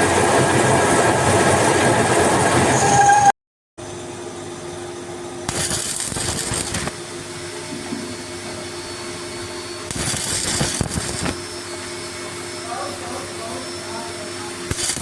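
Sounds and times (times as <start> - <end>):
electric motor humming: 5.5 - 7.0, 9.9 - 11.5, 14.7 - 15.0
rough machine working noise: 5.5 - 11.7, 12.7 - 15.0.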